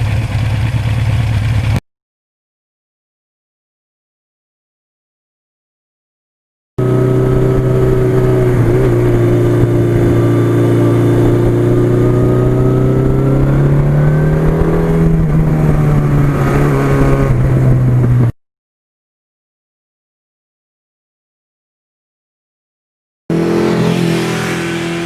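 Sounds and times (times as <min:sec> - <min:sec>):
motorcycle engine running: 0:00.0 - 0:01.8, 0:06.8 - 0:18.4.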